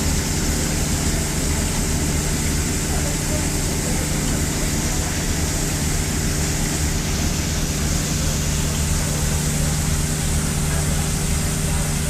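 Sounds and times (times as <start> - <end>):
boat engine running: 0.0 - 12.0.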